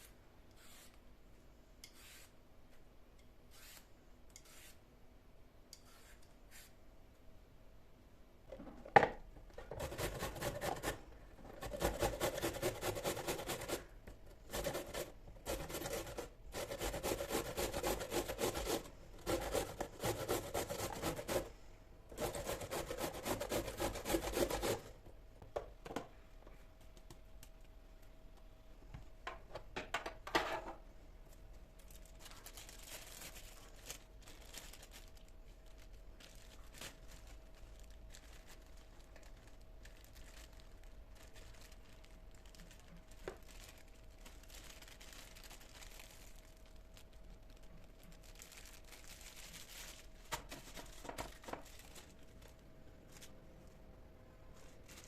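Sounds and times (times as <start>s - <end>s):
scraping and rubbing strokes: 0.0s - 1.0s, 1.8s - 2.4s, 3.5s - 4.8s, 5.8s - 6.8s
faint steady hum: 0.0s - 55.0s.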